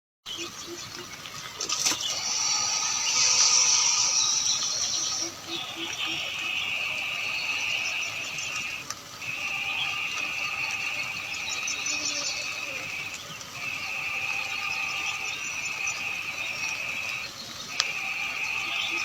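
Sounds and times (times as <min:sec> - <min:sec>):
high buzzing animal calls: 0:00.3 - 0:19.0.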